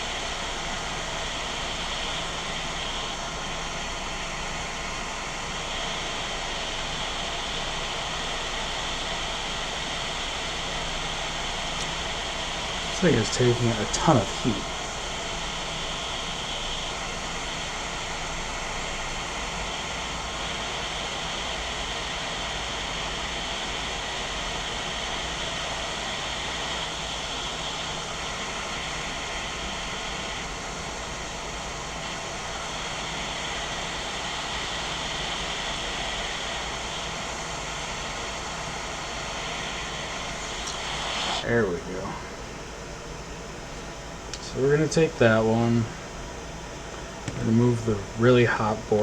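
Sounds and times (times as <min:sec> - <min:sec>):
hot air blower hissing with whine: 0:00.0 - 0:49.0.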